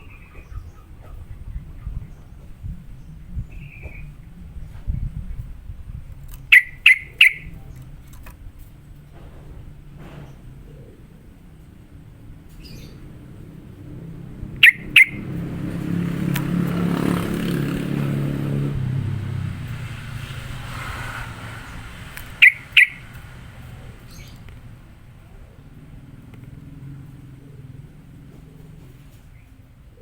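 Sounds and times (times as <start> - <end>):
passing vehicle rumbling: 0.0 - 30.0
bulbul sharp calls: 6.3 - 8.0, 12.6 - 18.7, 20.7 - 29.5.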